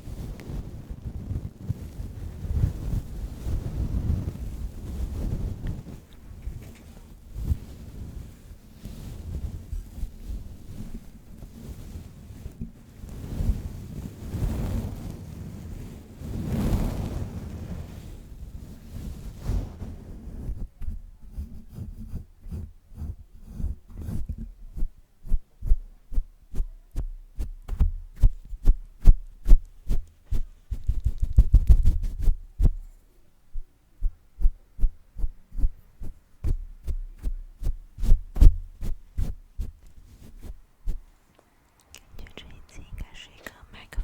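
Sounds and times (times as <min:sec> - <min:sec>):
rubbing on microphone: 0:00.0 - 0:41.2, 0:42.0 - 0:44.0
hand tapping microphone: 0:20.8 - 0:32.9.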